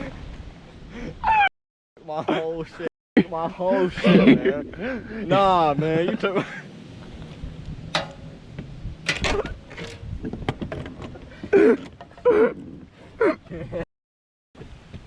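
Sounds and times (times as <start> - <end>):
wind rumble on microphone: 6.8 - 11.5.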